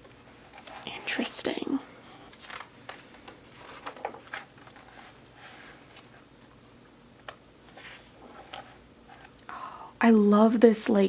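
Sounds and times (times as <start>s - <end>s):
paper and card rustling: 2.1s - 6.6s, 7.2s - 9.4s.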